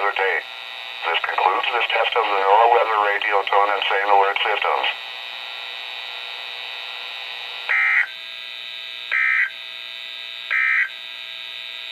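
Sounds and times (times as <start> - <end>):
steady buzzing hum: 0.0 - 11.9.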